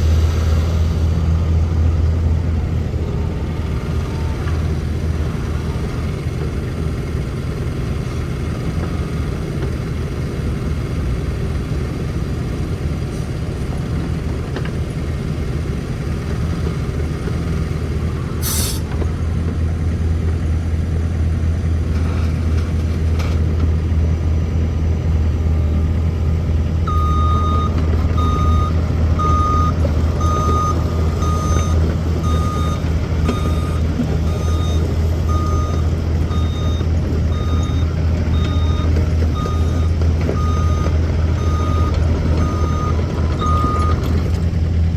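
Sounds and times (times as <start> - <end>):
excavator diesel engine running: 0.0 - 44.9
brief hiss: 18.4 - 18.9
travel alarm beeping: 26.9 - 44.0.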